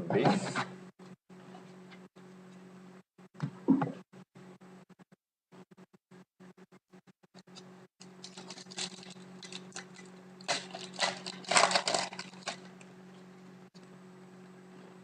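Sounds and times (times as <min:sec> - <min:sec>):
steady low hum: 0:00.0 - 0:15.0
card packs crackling and rustling: 0:08.2 - 0:12.9.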